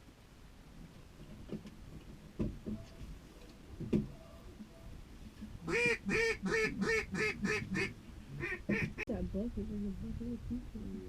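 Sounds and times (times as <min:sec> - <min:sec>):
dull knocks: 0:01.4 - 0:02.9
duck quacking: 0:05.6 - 0:09.0.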